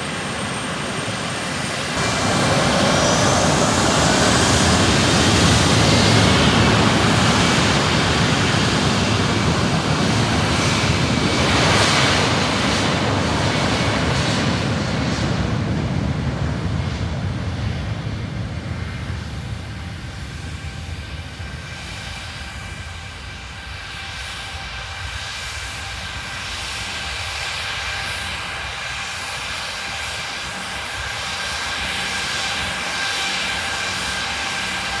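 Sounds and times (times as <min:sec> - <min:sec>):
jet airliner taking off: 0:00.0 - 0:35.0
falling whine: 0:01.2 - 0:09.1.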